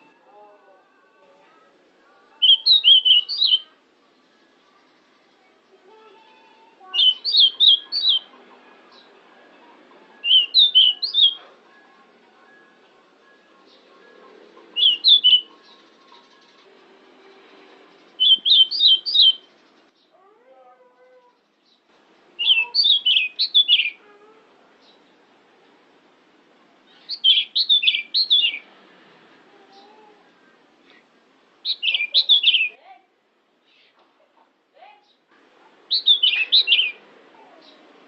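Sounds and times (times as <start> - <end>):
bird singing high whistled notes: 2.4 - 3.8, 6.9 - 8.4, 10.2 - 12.8, 14.7 - 16.7, 18.2 - 19.7, 22.4 - 24.0, 27.0 - 28.7, 31.6 - 32.8, 35.9 - 37.0.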